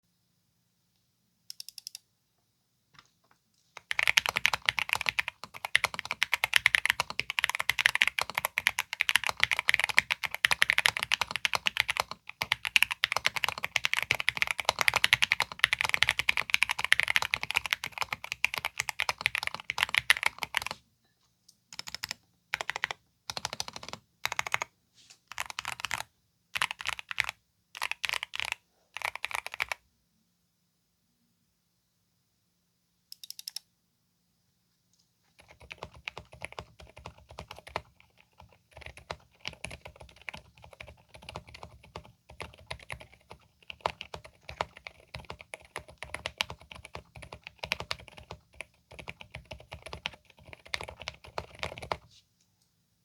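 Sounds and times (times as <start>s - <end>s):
mechanical keyboard typing: 3.8s - 20.8s, 21.7s - 24.7s, 25.3s - 29.8s, 35.4s - 52.1s.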